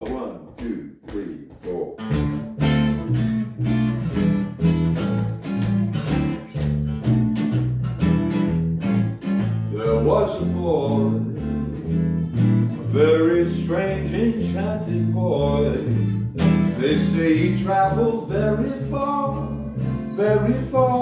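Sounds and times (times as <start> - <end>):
acoustic guitar picking chords: 1.9 - 21.0
person singing: 9.7 - 11.6, 12.8 - 15.9, 16.8 - 21.0.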